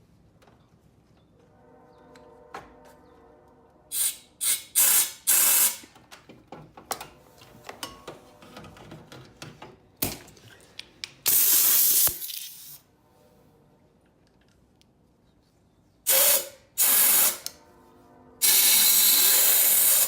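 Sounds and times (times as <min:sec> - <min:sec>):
compressed air hissing blasts: 0:03.9 - 0:05.8, 0:11.3 - 0:12.8, 0:16.1 - 0:17.4.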